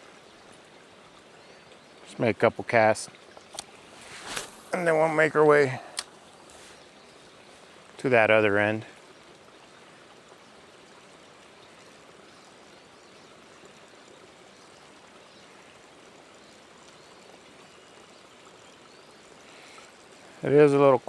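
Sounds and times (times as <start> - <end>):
creek water rushing: 0.0 - 21.0.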